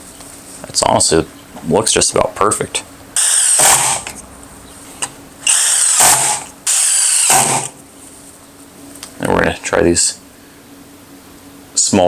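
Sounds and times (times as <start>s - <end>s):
impact driver driving screws: 3.2s - 4.2s, 5.4s - 7.8s.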